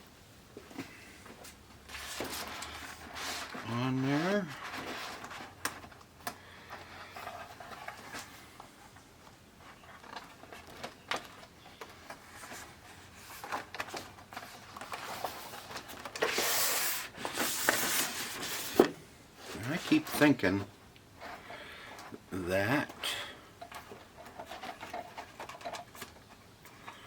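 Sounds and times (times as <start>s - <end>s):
plastic rubbing and scraping: 1.3s - 27.0s
plastic parts clicking and tapping: 23.6s - 27.0s.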